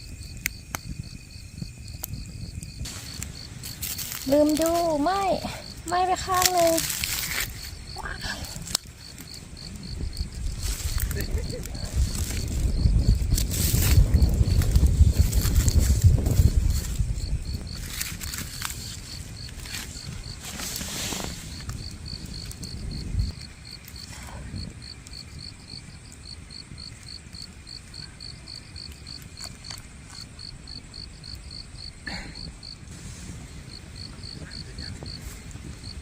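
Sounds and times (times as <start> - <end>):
insect chirping: 0.0 - 36.0.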